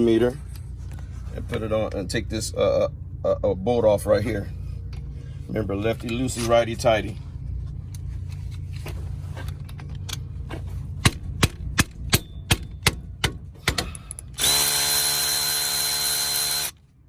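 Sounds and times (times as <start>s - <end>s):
cordless power tool whine: 13.8s - 16.9s.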